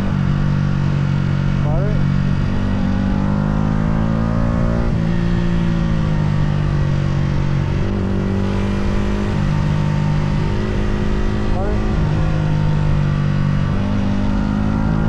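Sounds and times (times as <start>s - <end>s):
motorcycle engine pulling away: 5.2s - 14.7s.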